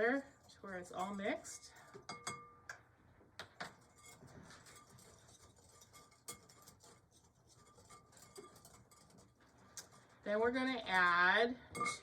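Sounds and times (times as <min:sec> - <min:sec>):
whisk scratching dry powder: 0:03.8 - 0:10.6
whisk ticking against glass: 0:03.9 - 0:10.0.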